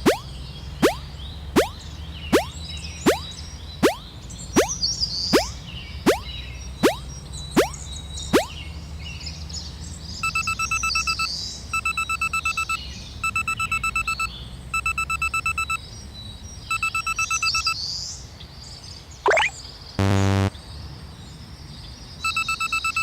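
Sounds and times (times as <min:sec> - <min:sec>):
two-tone electronic warning beeps: 0:00.0 - 0:01.0, 0:01.6 - 0:01.8, 0:02.4 - 0:04.8, 0:05.4 - 0:07.0, 0:07.6 - 0:07.8, 0:08.4 - 0:08.6, 0:10.2 - 0:15.8, 0:19.3 - 0:20.5.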